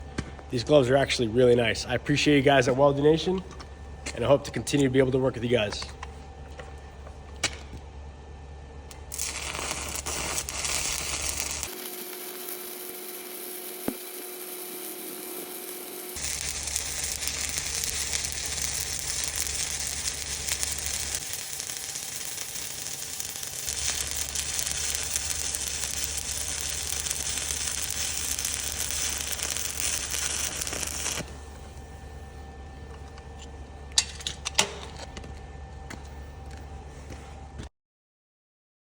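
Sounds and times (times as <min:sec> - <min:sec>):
arc welding crackling hiss: 0:08.9 - 0:32.0.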